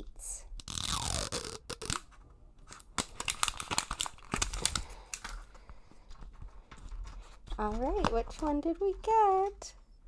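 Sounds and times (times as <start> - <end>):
packaging being torn: 0.6 - 2.1, 2.7 - 5.4
packaging crackling and clicking: 2.7 - 5.5.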